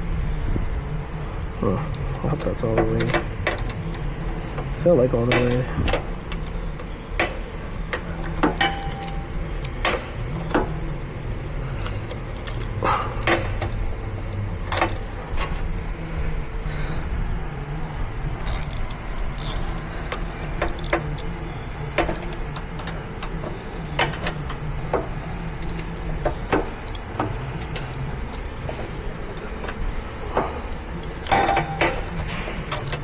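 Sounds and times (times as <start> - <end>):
low mechanical hum: 0.0 - 33.0
metallic clicks and knocks: 2.4 - 10.8, 18.4 - 33.0.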